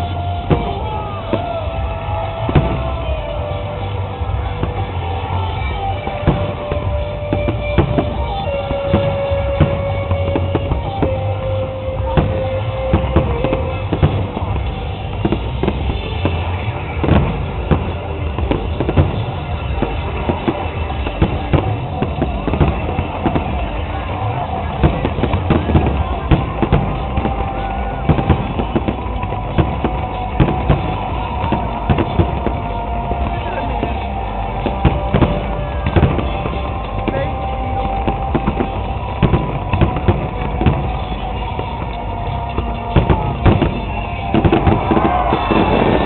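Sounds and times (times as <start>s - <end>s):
fireworks bangs and crackles: 0.0s - 46.0s
music with heavy low beat: 0.0s - 46.0s.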